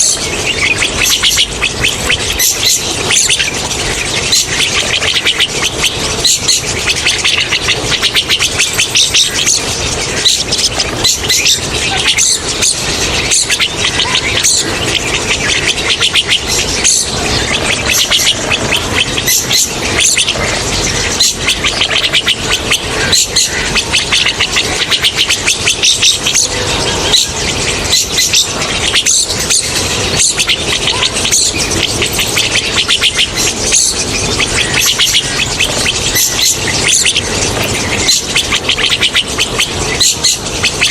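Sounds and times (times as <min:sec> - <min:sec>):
starlings chattering: 0:00.0 - 0:40.9.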